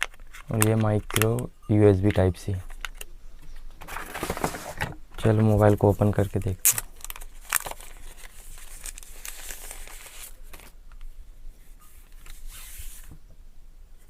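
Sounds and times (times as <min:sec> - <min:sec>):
plastic wrapping crinkling and tearing: 0:05.5 - 0:10.8.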